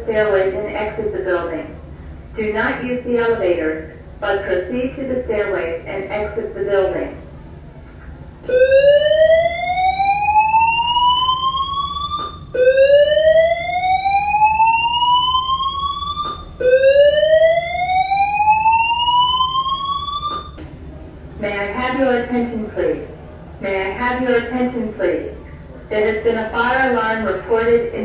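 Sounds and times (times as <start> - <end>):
rising whoop alarm tone: 8.5 - 20.6.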